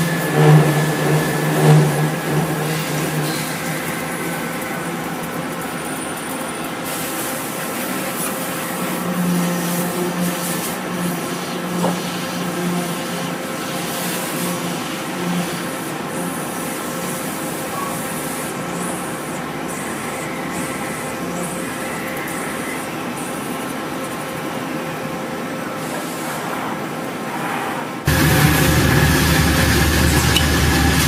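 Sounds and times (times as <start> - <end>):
low machinery hum: 0.0 - 6.9, 28.0 - 31.0
industrial machinery grinding hiss: 0.0 - 31.0.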